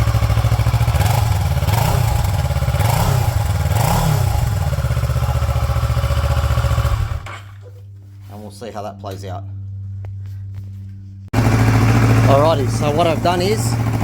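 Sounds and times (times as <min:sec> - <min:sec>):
motorcycle engine idling: 0:00.0 - 0:07.6, 0:11.3 - 0:14.0.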